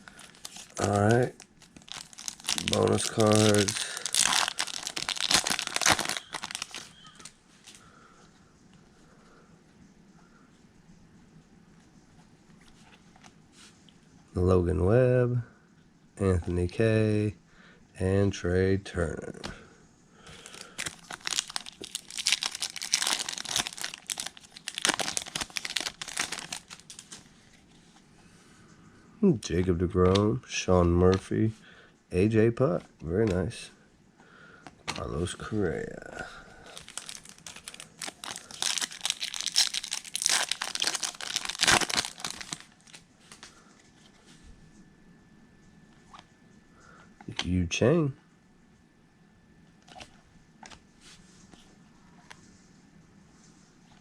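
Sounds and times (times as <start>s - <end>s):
foil wrapper crinkling and tearing: 0.0s - 7.4s, 20.3s - 27.3s, 36.6s - 43.4s.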